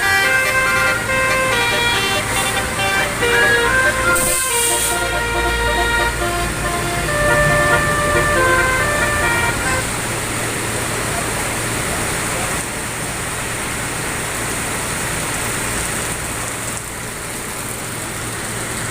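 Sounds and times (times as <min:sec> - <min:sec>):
bus horn multi-tone notes: 0:00.0 - 0:10.1.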